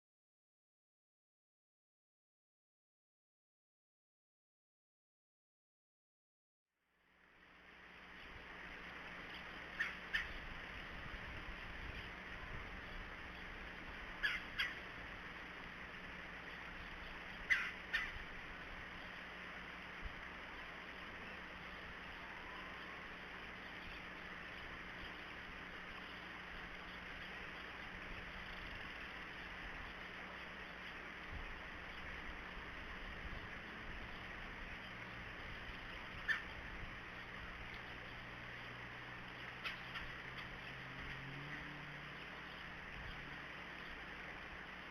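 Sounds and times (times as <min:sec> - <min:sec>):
steady hiss: 0:07.0 - 0:44.9
woodpecker call: 0:09.3 - 0:10.7, 0:14.1 - 0:14.9, 0:16.8 - 0:18.3, 0:35.7 - 0:37.3, 0:39.4 - 0:40.8
woodpecker calling: 0:09.3 - 0:11.1, 0:12.8 - 0:15.1, 0:16.5 - 0:19.2, 0:34.1 - 0:44.1.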